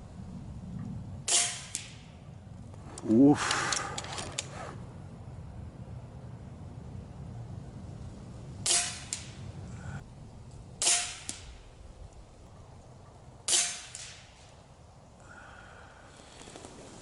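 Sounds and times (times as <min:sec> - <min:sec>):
air rifle shot crack: 0:01.2 - 0:02.1, 0:08.6 - 0:09.4.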